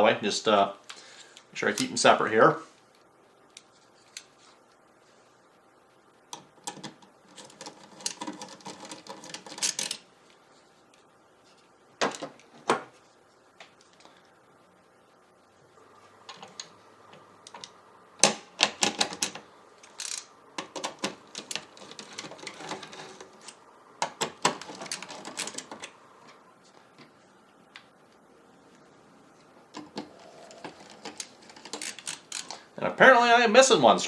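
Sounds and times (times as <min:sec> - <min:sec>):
computer parts clicking and rattling: 0:06.6 - 0:10.0, 0:17.5 - 0:26.0, 0:29.8 - 0:32.6.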